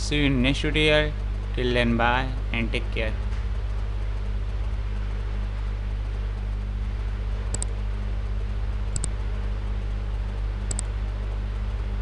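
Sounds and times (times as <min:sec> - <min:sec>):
low electrical hum: 0:00.0 - 0:12.0
computer mouse double clicks: 0:07.5 - 0:07.7, 0:08.9 - 0:09.1, 0:10.7 - 0:10.9.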